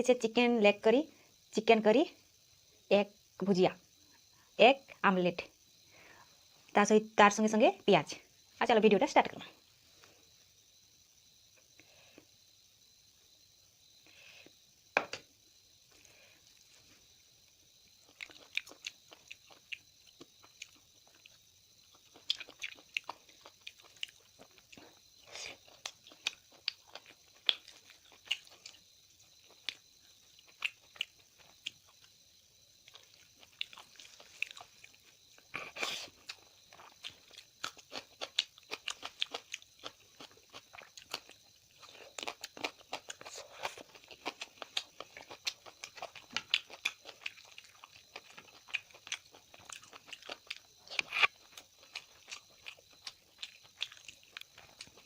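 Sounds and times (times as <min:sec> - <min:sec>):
person biting and chewing: 0:22.0 - 0:24.7, 0:32.9 - 0:55.0.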